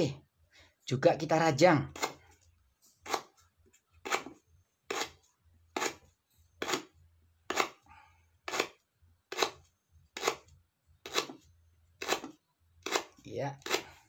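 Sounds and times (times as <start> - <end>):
knife chopping a stalk: 6.6 - 6.9, 7.5 - 7.8, 8.4 - 9.6, 10.2 - 10.4, 11.0 - 11.4, 12.0 - 13.9.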